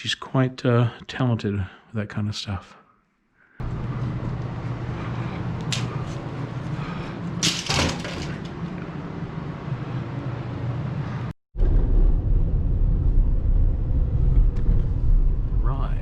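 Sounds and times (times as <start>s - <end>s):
vehicle rumbling: 8.5s - 16.0s.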